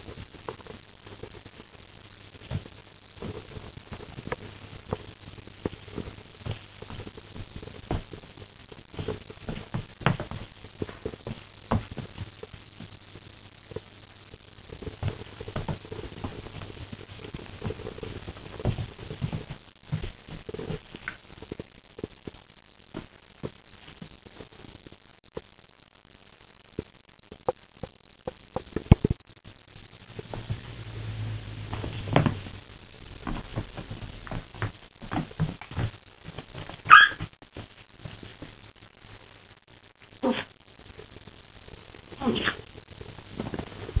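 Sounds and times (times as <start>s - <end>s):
taps knocks and scuffling: 2.4s - 13.0s, 14.8s - 21.7s, 31.7s - 38.6s
steady low hum: 28.3s - 36.8s.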